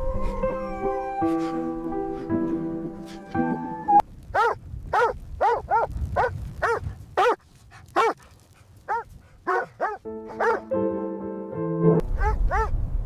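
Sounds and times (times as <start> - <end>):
dog barking: 4.3 - 8.2, 8.9 - 10.7, 12.2 - 12.7.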